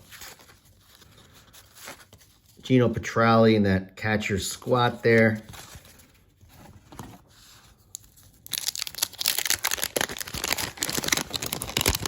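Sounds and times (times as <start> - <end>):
wrapper tearing and crinkling: 7.8 - 12.0.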